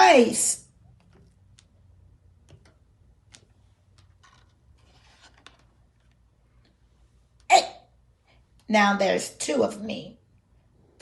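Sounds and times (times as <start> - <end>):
book page turning: 3.3 - 6.2.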